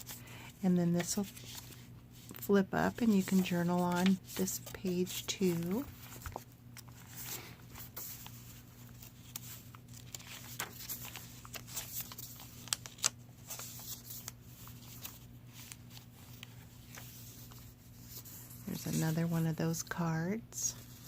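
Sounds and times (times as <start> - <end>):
pages flipping and rustling: 0.0 - 19.4.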